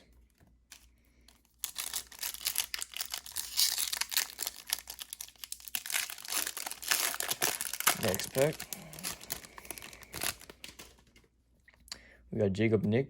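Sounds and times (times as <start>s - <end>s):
foil wrapper tearing and crinkling: 1.4s - 11.1s.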